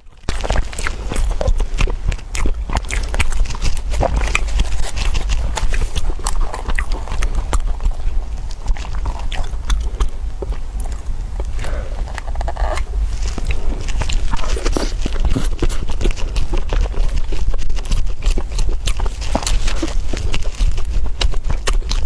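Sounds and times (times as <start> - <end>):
crunchy chewing: 0.0 - 22.0.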